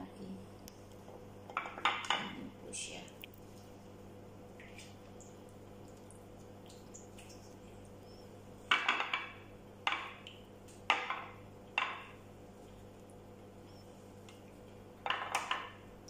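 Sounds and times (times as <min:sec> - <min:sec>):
faint hum: 0:00.0 - 0:16.0.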